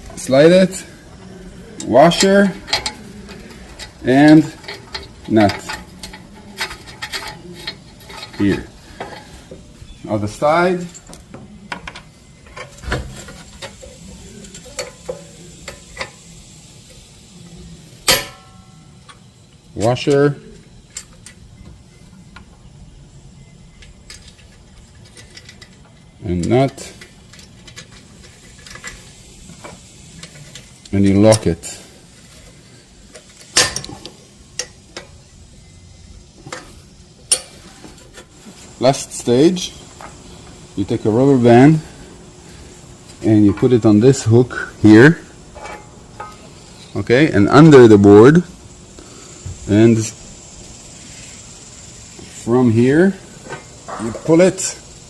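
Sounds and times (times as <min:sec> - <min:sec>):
small metal parts clicking: 0:01.8 - 0:09.4, 0:23.8 - 0:31.6.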